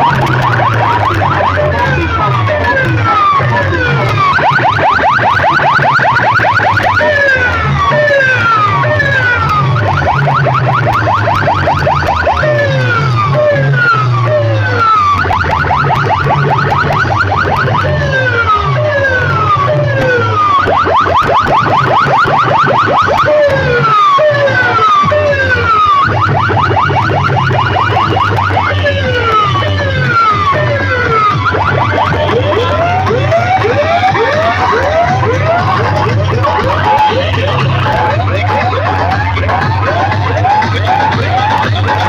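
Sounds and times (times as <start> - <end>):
electronic siren whoops: 0.0 - 42.0
heavy stepping bass line: 0.0 - 42.0.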